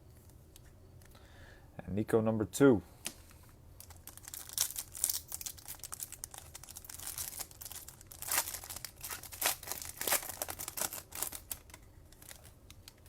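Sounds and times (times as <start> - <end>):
foil wrapper crinkling: 3.8 - 13.0.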